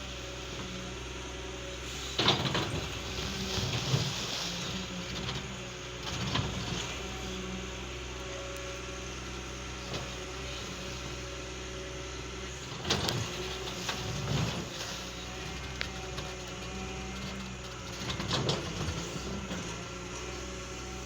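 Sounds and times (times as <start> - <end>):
excavator diesel engine running: 0.0 - 21.0.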